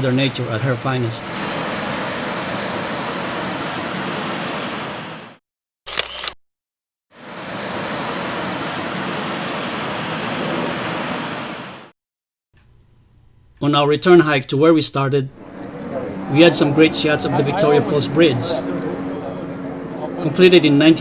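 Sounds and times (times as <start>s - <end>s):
waterfall rushing roar: 0.0s - 5.2s, 7.3s - 11.8s, 15.4s - 21.0s.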